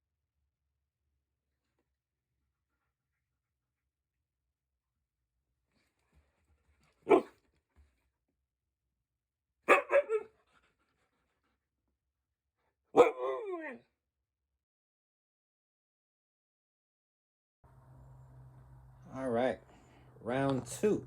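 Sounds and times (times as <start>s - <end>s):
dog barking: 7.0s - 7.4s, 9.7s - 10.3s, 12.9s - 13.6s.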